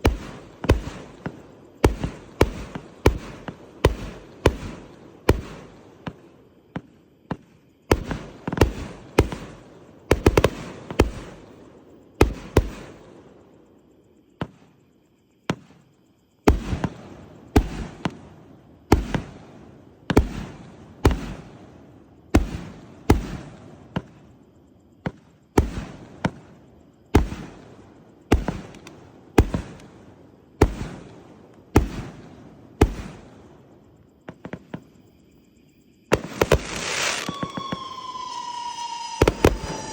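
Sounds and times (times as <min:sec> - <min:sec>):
fireworks bangs: 0:30.6 - 0:33.5, 0:36.1 - 0:39.9.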